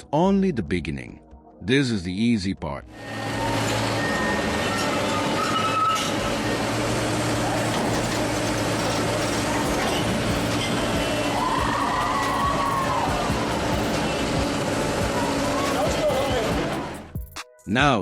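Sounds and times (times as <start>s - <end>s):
heavy vehicle engine running: 2.9s - 17.1s
rising and falling tone: 2.9s - 17.2s.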